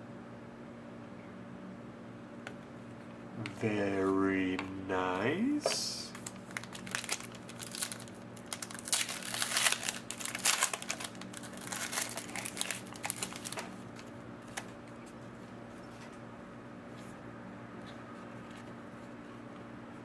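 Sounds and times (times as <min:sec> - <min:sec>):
foil wrappers crinkling and tearing: 0:06.1 - 0:14.8.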